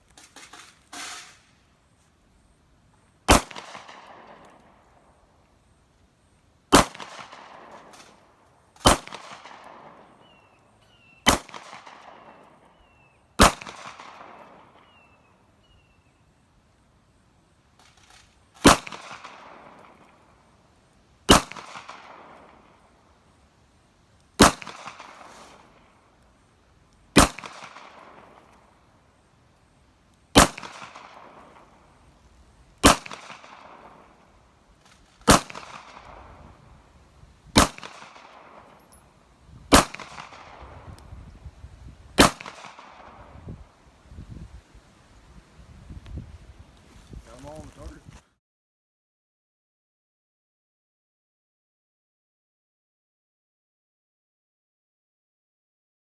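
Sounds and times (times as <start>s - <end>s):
gunshots with echo: 27.2s - 28.4s, 30.4s - 31.9s, 35.2s - 36.6s, 37.5s - 38.9s, 39.7s - 40.8s, 42.2s - 43.3s.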